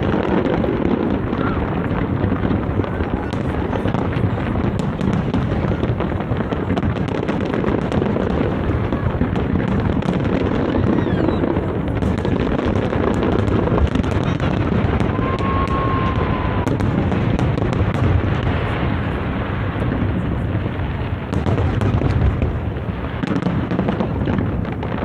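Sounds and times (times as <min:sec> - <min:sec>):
fireworks booming: 0:00.0 - 0:25.0
fireworks crackling pops: 0:00.0 - 0:25.0.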